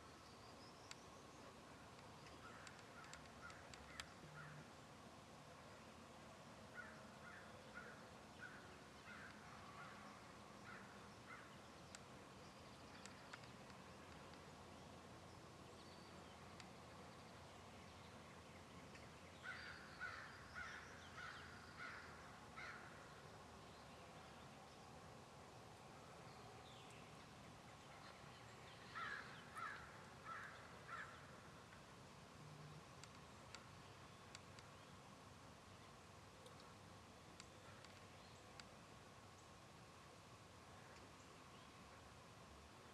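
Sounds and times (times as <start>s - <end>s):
faint steady hiss: 0.0s - 42.9s
crow cawing: 19.4s - 22.9s, 29.0s - 31.2s.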